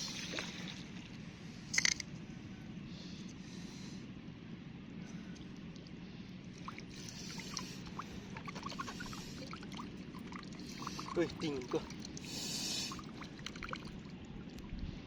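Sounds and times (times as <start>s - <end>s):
water trickling among rocks: 6.6s - 14.8s.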